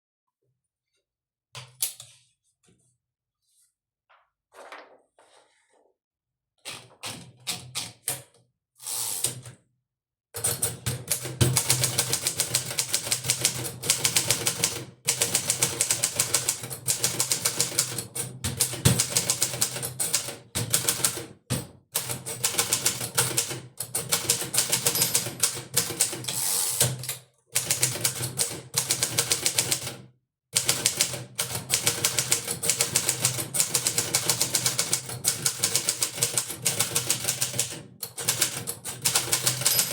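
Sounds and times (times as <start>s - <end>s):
manual typewriter typing: 10.4s - 21.2s, 22.0s - 27.0s, 27.6s - 30.0s, 30.6s - 39.9s.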